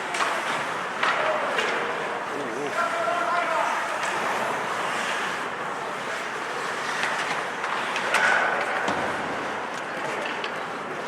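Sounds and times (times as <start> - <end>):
hockey stick or puck clacks: 0.0 - 1.9, 6.8 - 9.2
skates scraping on ice: 0.0 - 11.0.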